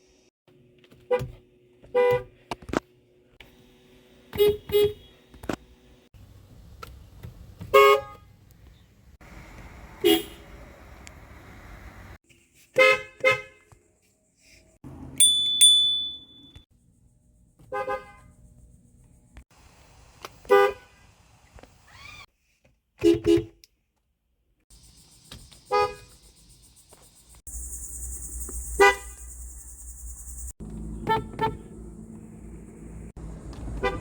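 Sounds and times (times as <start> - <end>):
car horns honking: 4.3 - 5.2, 7.7 - 8.3, 10.0 - 10.6, 30.9 - 31.8, 33.7 - 34.0.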